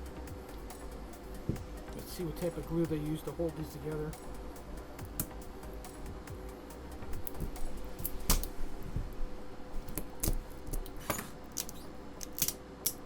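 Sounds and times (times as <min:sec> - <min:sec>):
hands clicking and scraping battery cells: 0:09.8 - 0:13.0.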